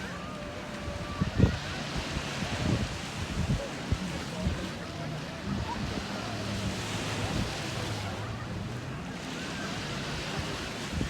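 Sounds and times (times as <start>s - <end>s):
wind buffeting microphone: 0.0s - 8.2s
sea waves washing onto beach: 0.0s - 11.0s.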